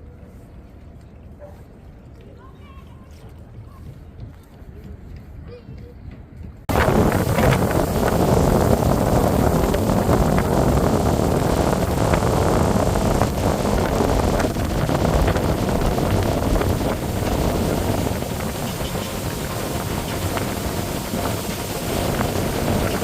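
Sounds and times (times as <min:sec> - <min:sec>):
wind buffeting microphone: 0:02.6 - 0:23.0
boat engine: 0:06.7 - 0:23.0
water rushing: 0:06.7 - 0:23.0.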